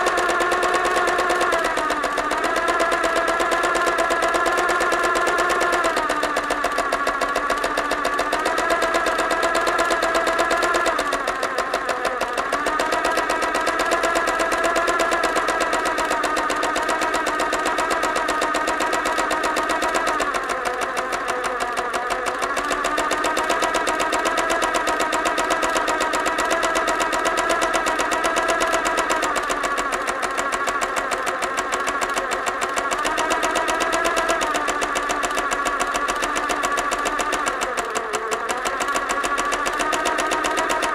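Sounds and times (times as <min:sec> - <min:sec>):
sewing machine stitching: 0:00.0 - 0:40.9.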